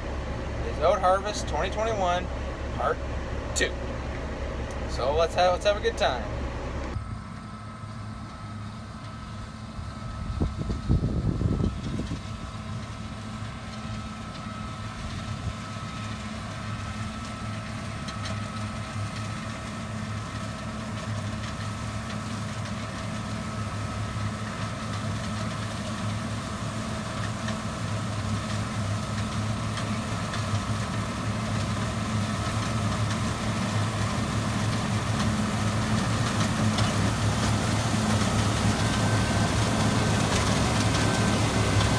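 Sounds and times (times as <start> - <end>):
farm machinery engine humming: 0.0 - 41.9.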